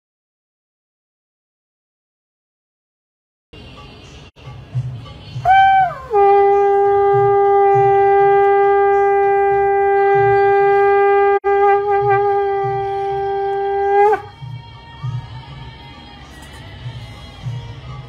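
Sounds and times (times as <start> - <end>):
conch shell horn blowing: 5.4 - 14.4.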